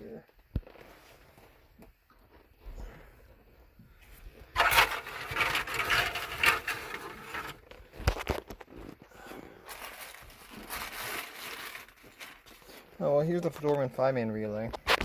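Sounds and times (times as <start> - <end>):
objects scraping and rustling: 4.0 - 15.0.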